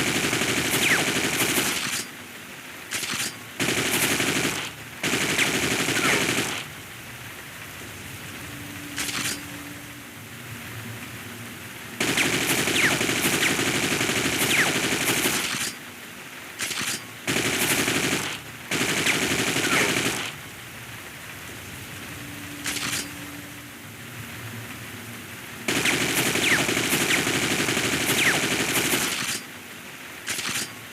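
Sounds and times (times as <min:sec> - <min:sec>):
steady hiss: 0:00.0 - 0:30.9
automatic rifle fire: 0:03.0 - 0:06.7, 0:12.0 - 0:15.8, 0:16.6 - 0:20.4, 0:25.7 - 0:29.4.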